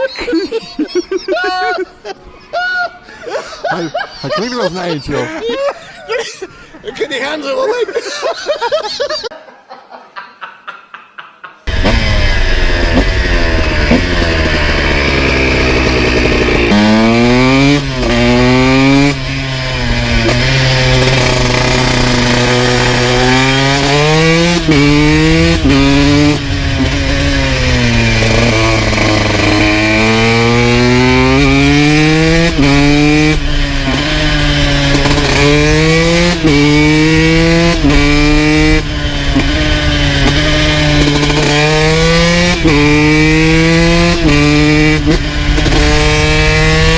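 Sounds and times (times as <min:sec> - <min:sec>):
two-stroke motorbike engine revving: 0:11.7 - 0:46.9.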